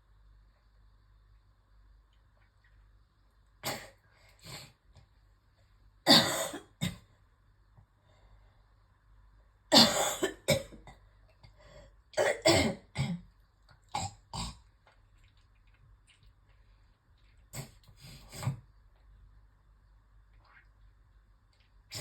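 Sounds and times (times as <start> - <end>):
person coughing with phlegm: 6.1 - 7.1, 9.7 - 11.0, 12.2 - 13.2.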